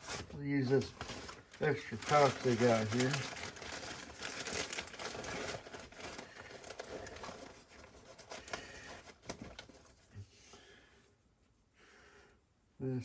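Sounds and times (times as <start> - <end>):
tool bag rustling: 0.0 - 9.1.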